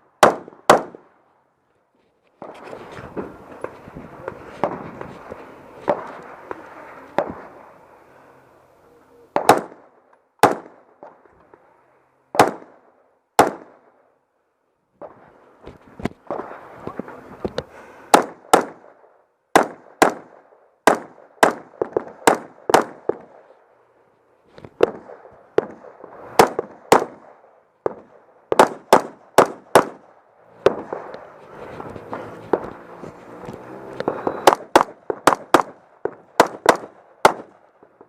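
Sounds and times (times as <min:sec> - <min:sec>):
rifle shots: 0:00.2 - 0:01.1, 0:09.3 - 0:11.2, 0:12.3 - 0:14.0, 0:18.1 - 0:23.5, 0:24.8 - 0:33.0, 0:33.6 - 0:37.7.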